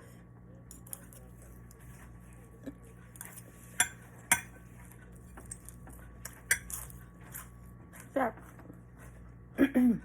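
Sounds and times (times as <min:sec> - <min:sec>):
cutlery clinking on a plate: 0:03.8 - 0:04.6.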